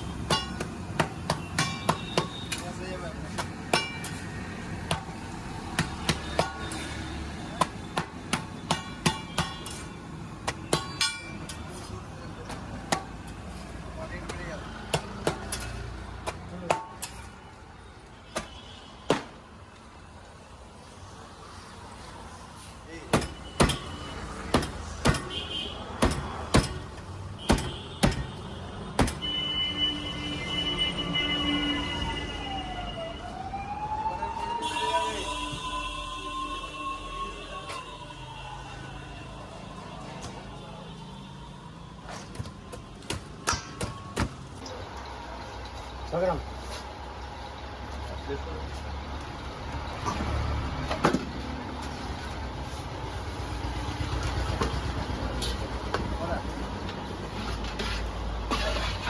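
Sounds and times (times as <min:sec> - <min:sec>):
street noise: 0:00.0 - 0:59.0
wailing siren-like tone: 0:30.5 - 0:39.7.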